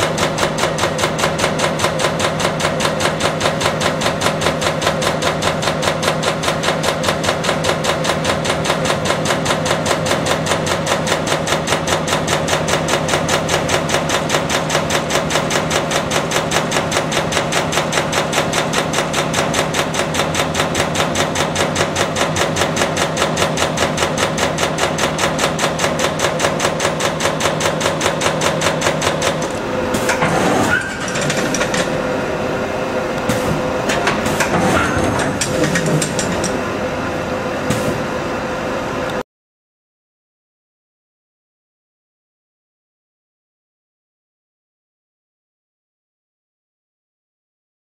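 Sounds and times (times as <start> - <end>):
turret punch punching sheet metal: 0.0 - 32.1, 33.2 - 36.7, 37.7 - 38.1
machine whine: 23.3 - 39.2.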